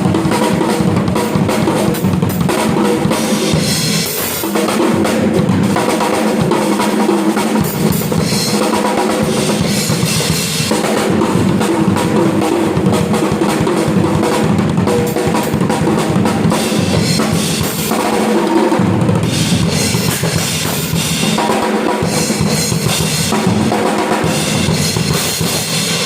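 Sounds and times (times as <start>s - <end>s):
bass drum and snare strokes: 6.8s - 26.0s
cymbals washing: 16.2s - 26.0s.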